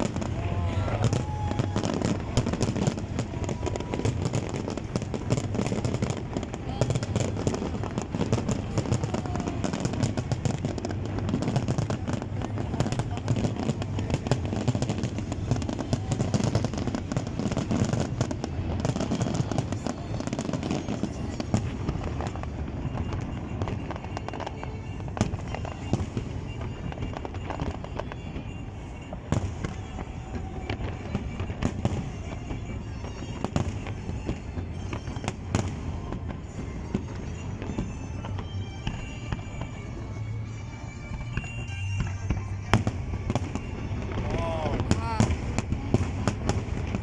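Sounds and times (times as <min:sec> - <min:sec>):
fireworks bangs and crackles: 0:00.0 - 0:47.0
faint music playing: 0:19.3 - 0:47.0.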